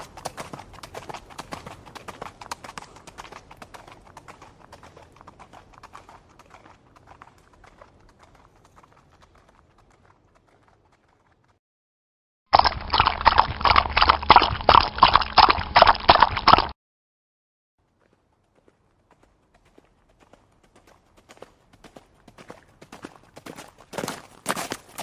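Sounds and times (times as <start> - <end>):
horse hoofbeats galloping: 0.0 - 11.6, 17.9 - 25.0.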